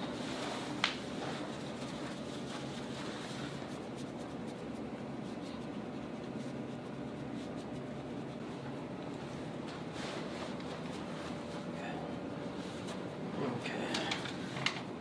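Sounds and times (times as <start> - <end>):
low room hum: 0.0 - 15.0
hands rubbing skin: 0.1 - 11.6.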